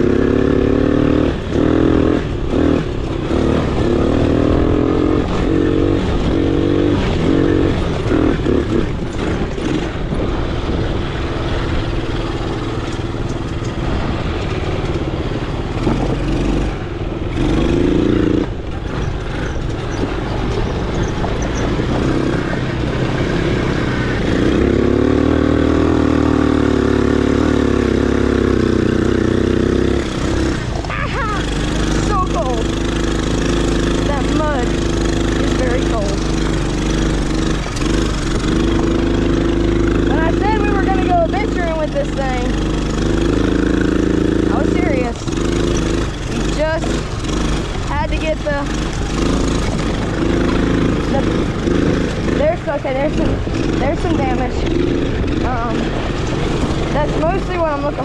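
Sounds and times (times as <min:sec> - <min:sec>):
atv engine revving: 0:00.0 - 0:58.0.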